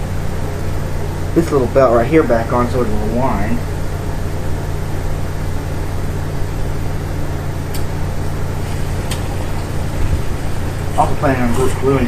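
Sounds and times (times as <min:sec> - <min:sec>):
low machine hum: 0:00.0 - 0:12.0
small click: 0:07.7 - 0:07.9.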